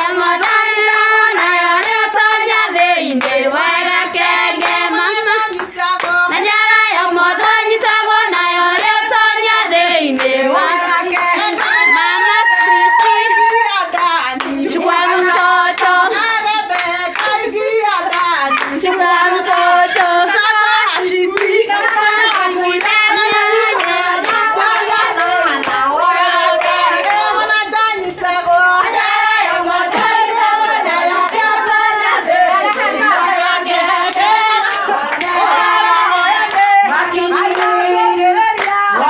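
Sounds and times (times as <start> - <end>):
women singing together: 0.0 - 39.0
hand claps: 0.4 - 0.7, 4.6 - 7.6, 8.7 - 9.0, 16.7 - 20.2, 29.9 - 30.2, 34.1 - 35.8, 36.4 - 39.0.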